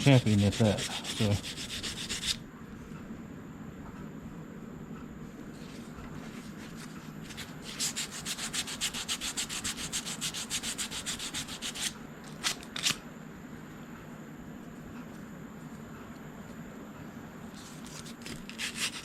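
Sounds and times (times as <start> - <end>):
sandpaper strokes on metal: 0.0 - 2.4, 7.6 - 11.9, 18.5 - 19.0.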